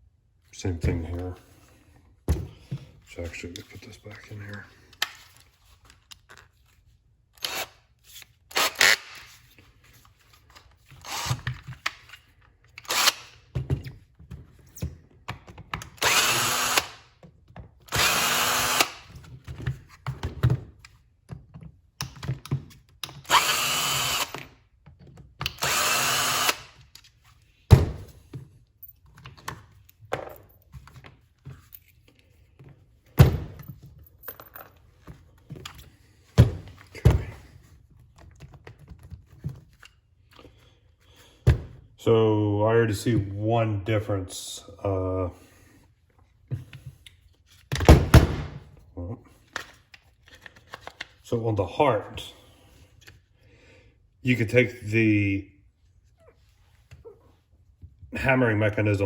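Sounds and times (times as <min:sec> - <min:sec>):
power driver whirring in bursts: 0:16.0 - 0:17.0, 0:17.9 - 0:19.1, 0:23.3 - 0:24.4, 0:25.5 - 0:26.7
clicks of small parts handled: 0:49.5 - 0:51.2.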